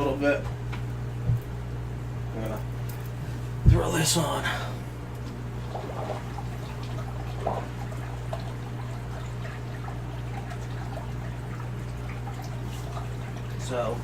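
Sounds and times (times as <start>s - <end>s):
steady low hum: 0.0s - 14.0s
small water splashes: 5.6s - 13.9s
water pouring and trickling: 5.6s - 14.0s.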